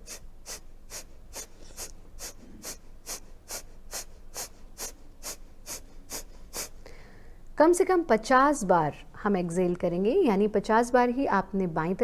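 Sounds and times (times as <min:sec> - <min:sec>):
sharp nasal puffs: 0:00.0 - 0:07.1.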